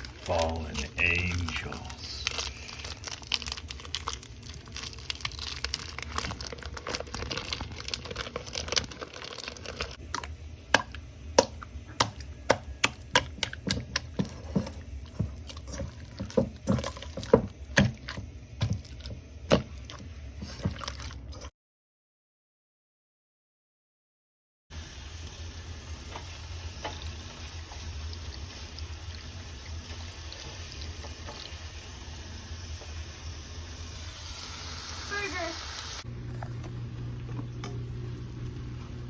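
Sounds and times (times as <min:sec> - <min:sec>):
person chewing food: 0:02.3 - 0:21.5.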